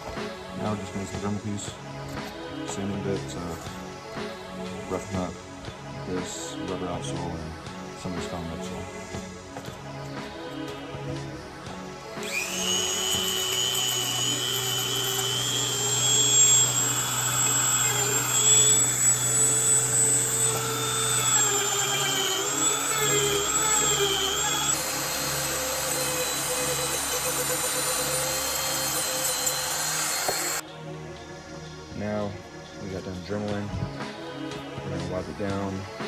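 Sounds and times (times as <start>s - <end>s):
rotary tool grinding rubber: 8.6s - 30.6s.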